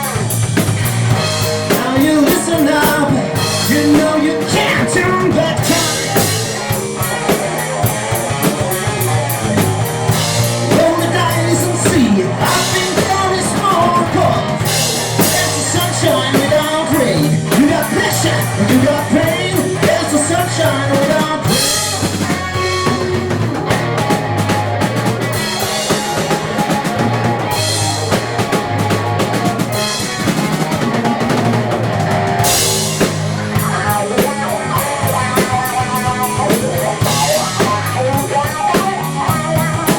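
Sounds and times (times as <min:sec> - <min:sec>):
live rock band playing: 0:00.0 - 0:39.9.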